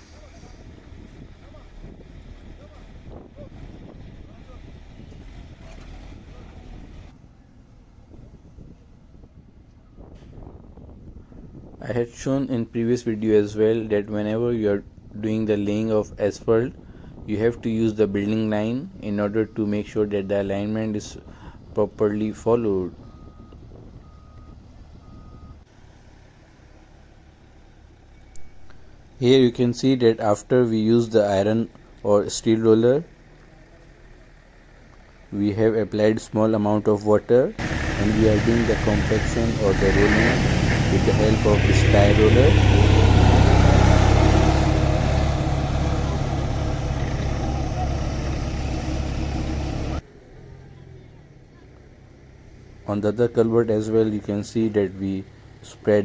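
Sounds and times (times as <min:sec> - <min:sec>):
low engine rumble: 0:00.0 - 0:56.0
vehicle reverse alarm beeping: 0:22.9 - 0:25.7.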